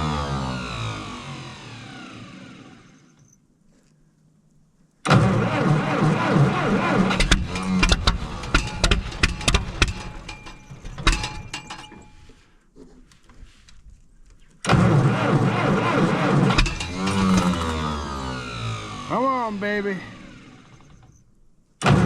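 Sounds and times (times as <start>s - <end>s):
tractor engine cranking: 5.0s - 12.6s, 14.2s - 22.0s.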